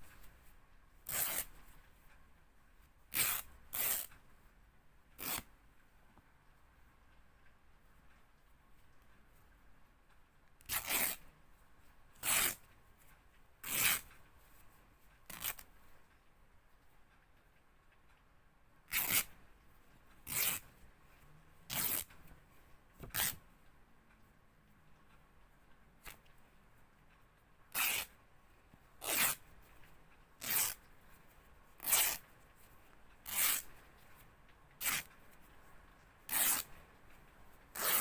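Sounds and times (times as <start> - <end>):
fabric ripping: 1.1 - 1.5, 10.7 - 11.2, 12.2 - 12.6, 18.9 - 19.3, 20.3 - 20.6, 21.7 - 22.1, 23.1 - 23.4, 29.0 - 29.4, 30.4 - 30.8, 31.8 - 32.2, 33.3 - 33.7, 36.3 - 36.7, 37.8 - 38.0.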